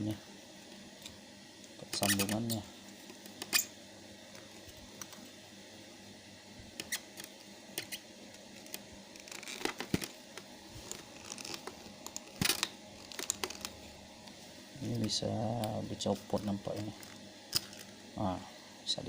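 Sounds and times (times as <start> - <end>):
plastic rustling: 8.5 - 18.0.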